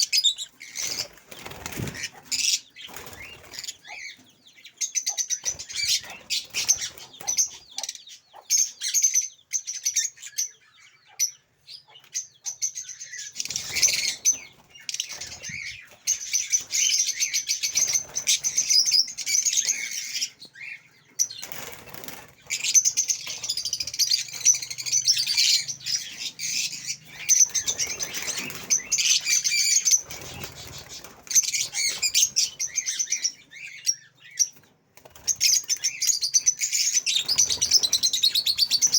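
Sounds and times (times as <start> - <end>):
lovebirds chattering: 0.0 - 38.9
wing flapping: 0.8 - 3.6, 21.4 - 22.7, 30.0 - 32.1.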